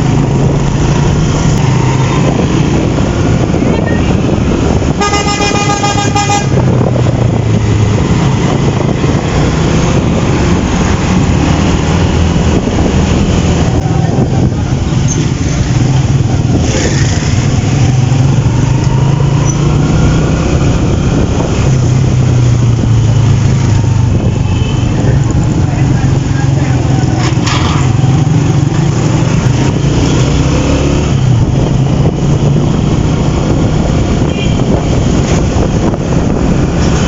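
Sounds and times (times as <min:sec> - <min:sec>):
vehicle horn honking: 0:05.0 - 0:06.6.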